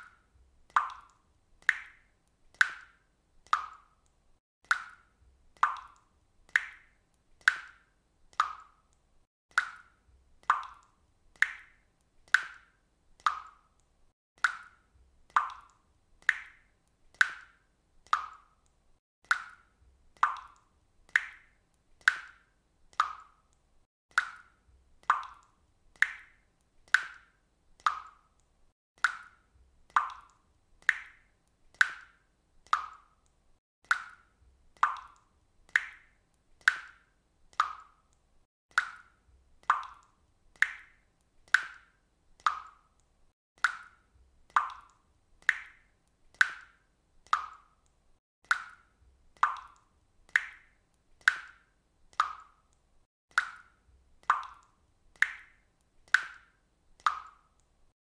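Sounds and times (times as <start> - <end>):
water dripping from faucet: 0.0 - 58.0.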